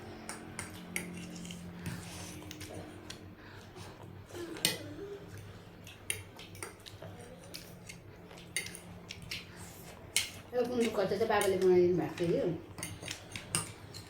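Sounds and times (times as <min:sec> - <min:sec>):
utensils clicking against a bowl: 0:06.0 - 0:14.0.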